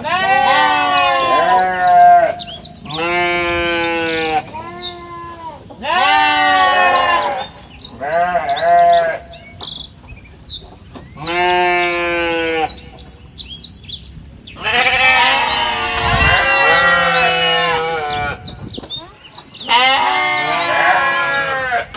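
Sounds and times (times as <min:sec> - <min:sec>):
livestock bleating: 0:00.0 - 0:09.4, 0:11.2 - 0:12.8, 0:14.6 - 0:18.6, 0:19.6 - 0:21.9
small birds chirping: 0:00.0 - 0:21.9.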